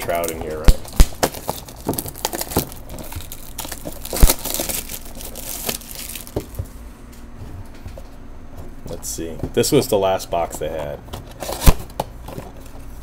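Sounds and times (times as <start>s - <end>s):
packaging crinkling and tearing: 0.0s - 6.6s.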